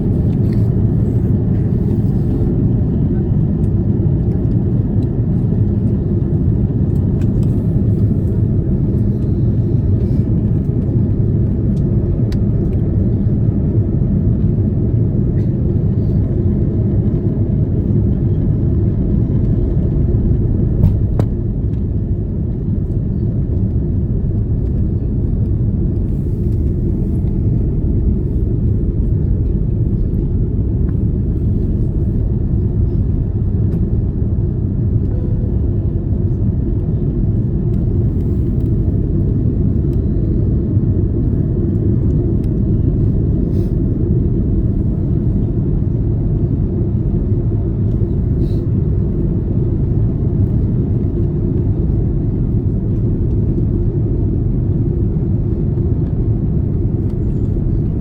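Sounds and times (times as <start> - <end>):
airliner cabin engine rumble: 0.0 - 58.0.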